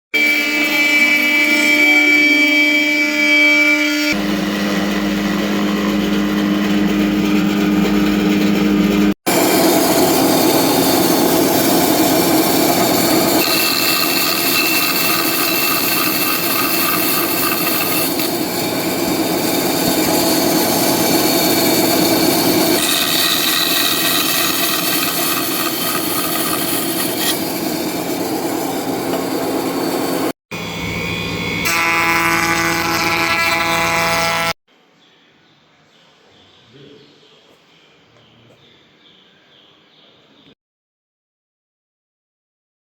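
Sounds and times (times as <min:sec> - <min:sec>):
power tools sawing wood: 0:00.2 - 0:34.6.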